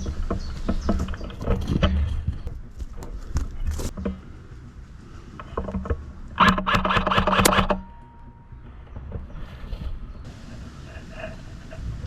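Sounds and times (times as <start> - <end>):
airsoft gun firing full auto: 6.4 - 7.8.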